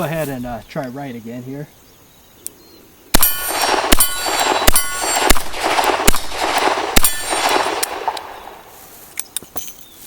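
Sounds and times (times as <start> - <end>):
revolver gunshots: 3.1 - 8.6
steel plate target ringing: 3.2 - 5.4, 7.0 - 7.6.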